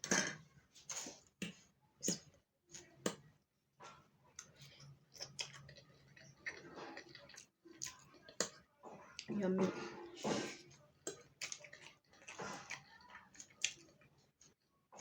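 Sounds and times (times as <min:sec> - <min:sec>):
eating clicks and wet smacks: 0:04.3 - 0:09.3, 0:11.0 - 0:15.0.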